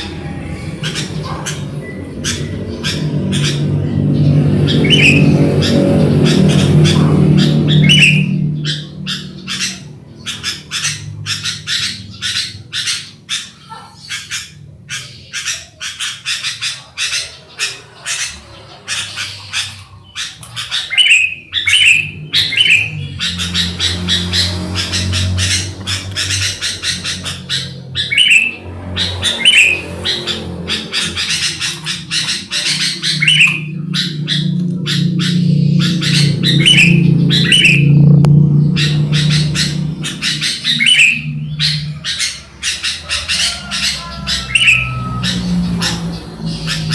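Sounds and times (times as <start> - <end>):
low steady hum: 0.0 - 15.2, 21.4 - 46.9
birds chattering: 0.0 - 46.9
bird whistled phrases: 4.7 - 5.8, 7.4 - 10.8, 20.7 - 23.0, 28.0 - 28.6, 31.3 - 38.0, 38.8 - 46.0.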